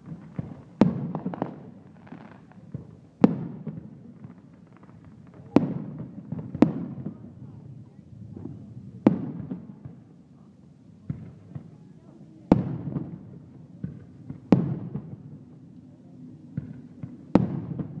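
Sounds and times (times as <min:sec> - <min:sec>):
firework cracks and pops: 0:00.0 - 0:07.6, 0:12.5 - 0:15.8, 0:16.5 - 0:18.0
fireworks bangs echoing: 0:00.0 - 0:10.2, 0:11.0 - 0:11.8, 0:12.5 - 0:15.4, 0:16.5 - 0:18.0.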